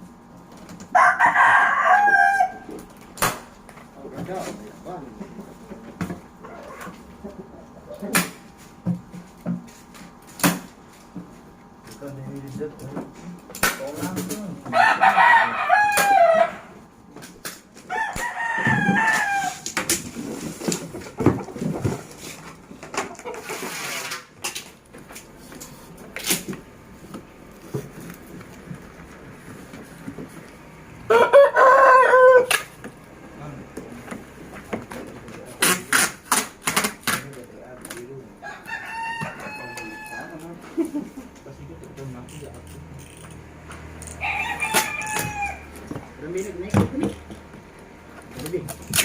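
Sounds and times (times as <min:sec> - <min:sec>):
rooster crowing: 0:00.9 - 0:02.8, 0:14.6 - 0:16.8, 0:17.9 - 0:19.7, 0:31.0 - 0:32.7, 0:38.4 - 0:40.6, 0:44.1 - 0:45.8.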